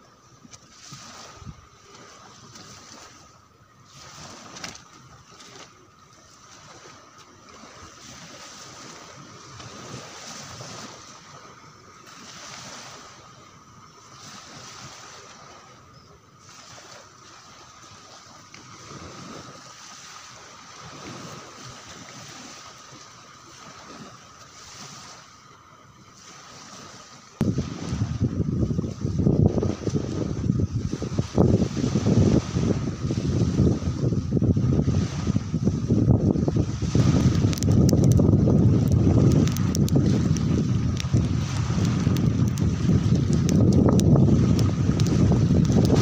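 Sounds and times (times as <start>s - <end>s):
sea surf washing onto beach: 0.0s - 46.0s.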